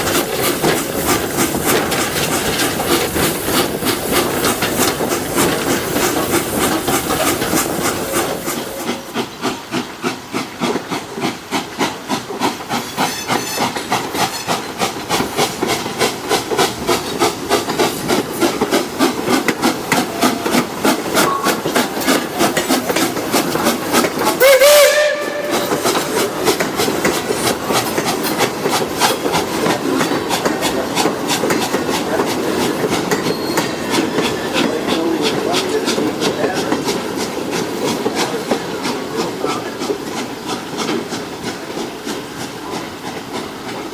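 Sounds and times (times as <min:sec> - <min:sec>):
steam train clatter and hiss: 0:00.0 - 0:43.9
steam whistle blast: 0:13.0 - 0:14.5, 0:24.4 - 0:25.9.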